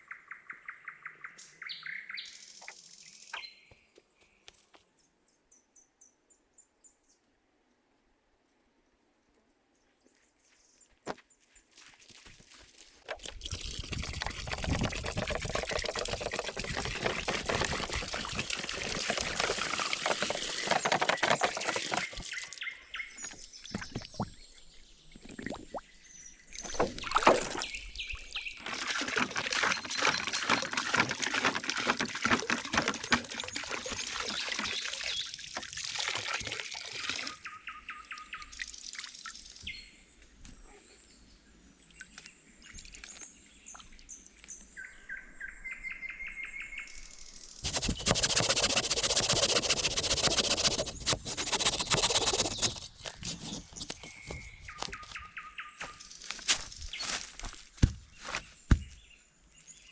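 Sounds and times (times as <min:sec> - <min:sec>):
water pouring and splashing: 0:13.0 - 0:25.9, 0:26.5 - 0:37.5, 0:47.6 - 0:55.3.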